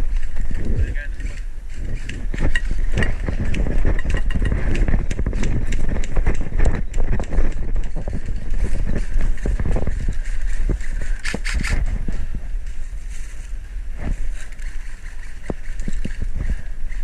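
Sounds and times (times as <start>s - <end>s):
footsteps: 0.0s - 17.0s
rustling of gear: 0.0s - 17.0s
wind rumble on microphone: 0.0s - 17.0s
camera handling noise: 10.2s - 11.9s.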